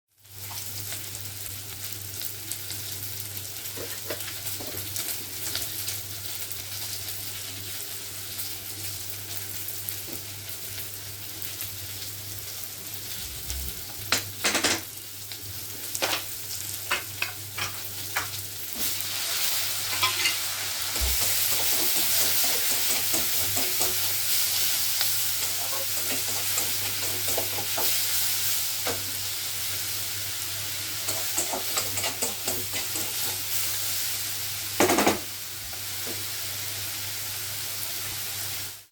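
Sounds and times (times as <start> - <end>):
food sizzling in hot oil: 0.1 - 38.9
utensil clicking against pan: 21.0 - 24.1, 31.0 - 33.4.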